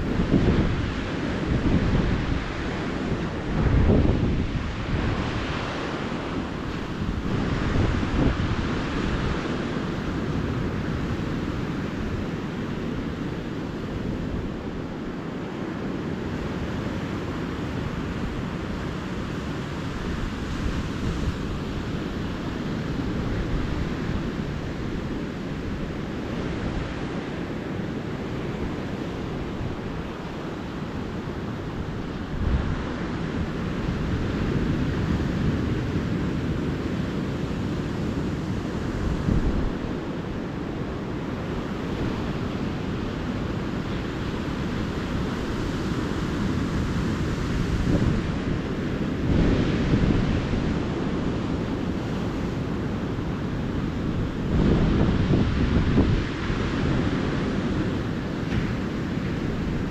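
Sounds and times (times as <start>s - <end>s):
ocean surf washing onto beach: 0.0s - 59.9s
wind thumps on microphone: 54.1s - 57.4s.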